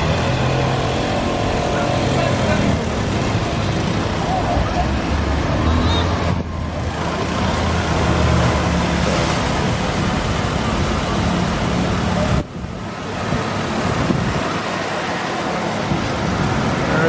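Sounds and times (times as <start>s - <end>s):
engine humming: 0.0s - 17.0s
loud rushing noise: 0.0s - 17.0s
wind buffeting microphone: 8.6s - 14.8s.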